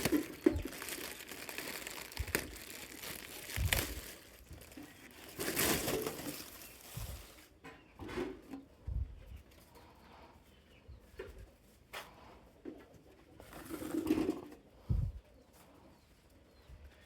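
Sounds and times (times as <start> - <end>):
packaging crinkling and rustling: 0.0 - 7.5.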